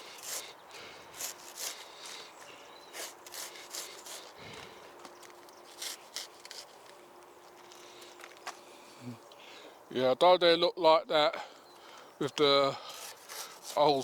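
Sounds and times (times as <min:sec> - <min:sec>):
hand saw rasping through stalk: 0:00.0 - 0:06.9, 0:12.8 - 0:14.0
leaves rustling: 0:00.0 - 0:08.7.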